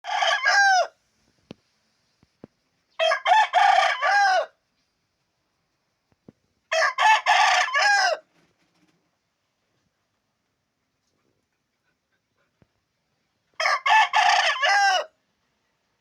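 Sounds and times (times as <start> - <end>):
rooster crowing: 0.0 - 0.9, 3.0 - 4.6, 6.7 - 8.2, 13.6 - 15.1.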